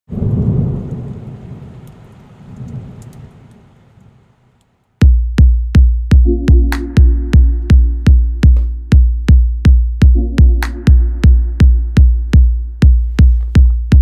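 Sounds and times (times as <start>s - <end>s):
deep thunder-like rumble: 0.1s - 3.4s
electronic bass-drum beat: 5.0s - 14.0s
held synth chord: 6.2s - 9.3s, 10.0s - 12.8s.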